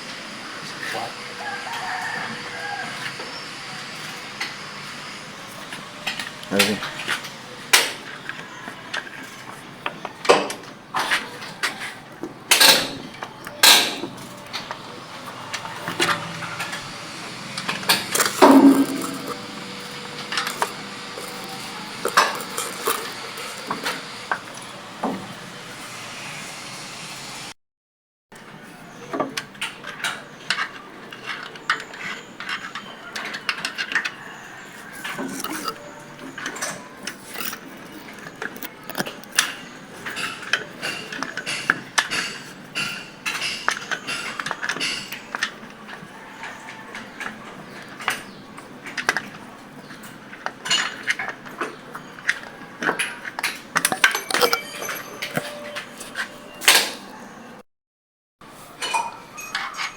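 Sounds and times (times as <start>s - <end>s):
metal tools clinking on engine: 12.5s - 24.5s, 34.9s - 49.3s, 50.0s - 56.9s, 58.8s - 59.9s.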